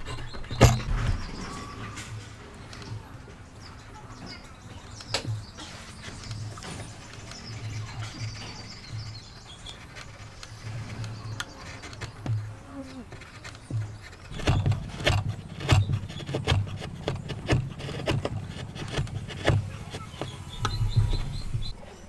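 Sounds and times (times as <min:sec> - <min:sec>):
sharp knocks on wood: 0:00.4 - 0:01.4, 0:13.2 - 0:21.7.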